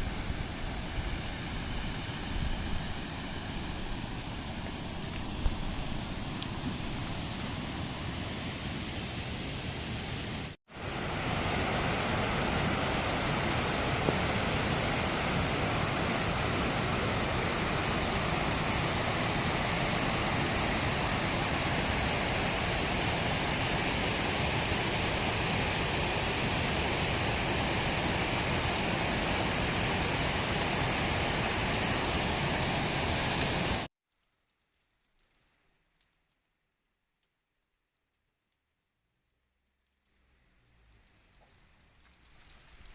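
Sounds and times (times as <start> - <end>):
fast river rushing: 0.0 - 33.9.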